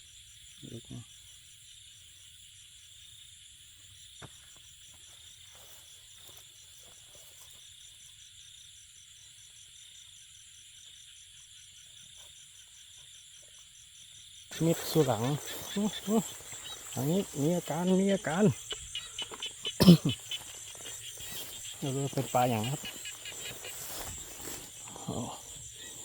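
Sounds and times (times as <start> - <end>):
insects trilling: 0.0 - 26.0
pulsing insect chirp: 0.0 - 26.0
faint rustles: 20.1 - 26.0.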